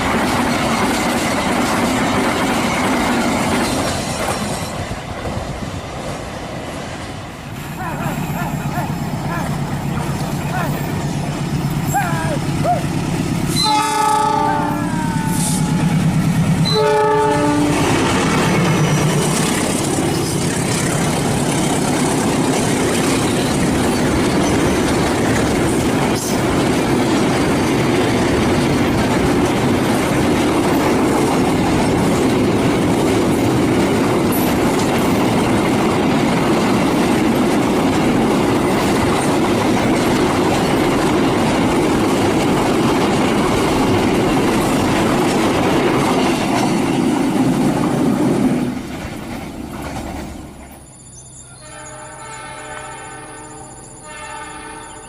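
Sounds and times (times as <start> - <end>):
train wheels rumbling on rails: 0.0 - 55.0
diesel locomotive horn blasts: 13.5 - 18.0, 51.5 - 55.0.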